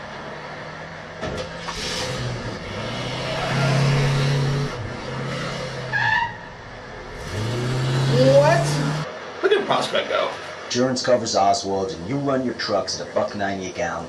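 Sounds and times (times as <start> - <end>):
vehicle engine revving: 0.0 - 9.3.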